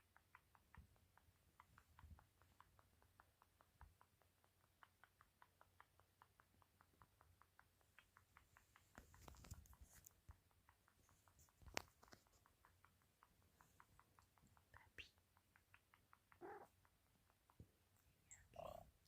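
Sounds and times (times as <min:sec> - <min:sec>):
cat clicking squeaks: 0:12.4 - 0:17.4.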